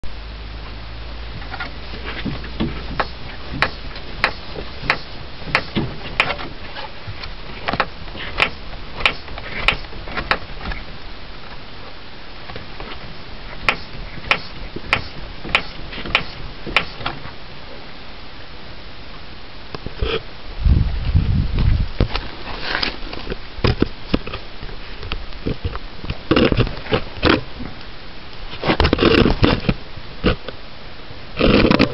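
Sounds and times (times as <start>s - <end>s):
car suspension knocking: 1.4s - 6.6s, 13.6s - 17.2s.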